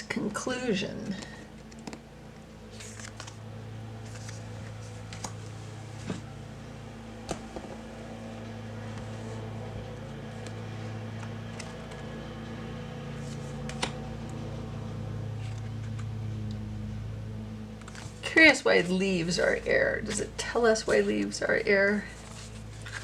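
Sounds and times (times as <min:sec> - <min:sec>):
low electrical hum: 0:00.0 - 0:23.0
cards clicking and tapping: 0:01.1 - 0:02.1, 0:10.3 - 0:12.1, 0:13.2 - 0:14.4.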